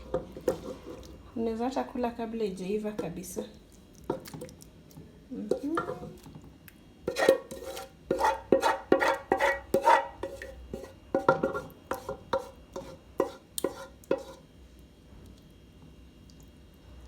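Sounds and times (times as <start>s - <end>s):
metal spoon scraping cooking pot: 7.1s - 14.4s.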